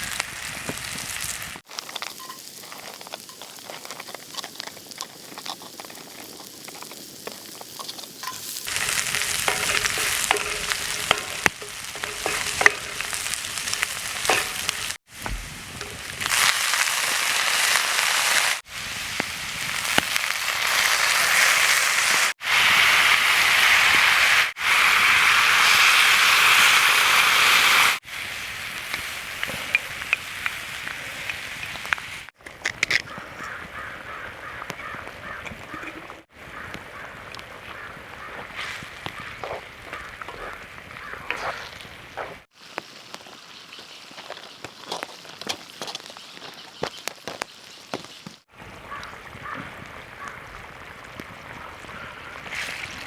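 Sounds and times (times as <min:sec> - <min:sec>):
food sizzling in hot oil: 0:00.0 - 0:32.3.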